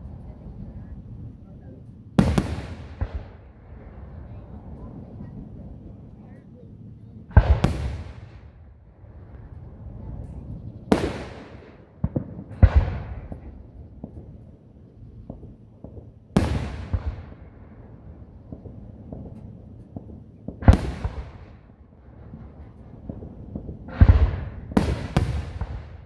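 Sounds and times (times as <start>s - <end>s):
firework pops and crackles: 2.2s - 3.3s, 7.3s - 8.5s, 15.2s - 17.3s, 18.5s - 21.6s, 22.3s - 26.0s
fireworks booming: 2.2s - 6.1s, 7.3s - 8.6s, 9.2s - 14.4s, 15.2s - 26.0s.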